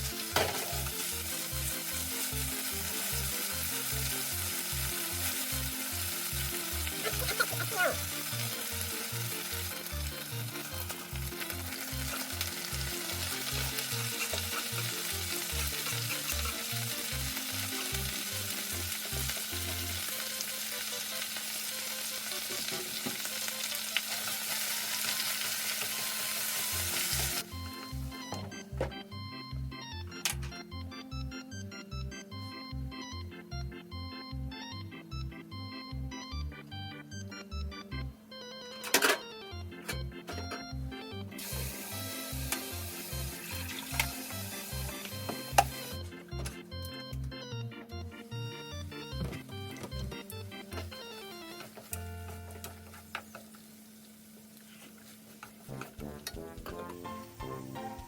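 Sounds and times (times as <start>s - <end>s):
food sizzling in a frying pan: 0.0s - 28.0s, 41.4s - 46.0s, 52.8s - 55.3s
soft background music: 0.0s - 53.8s, 55.5s - 58.0s.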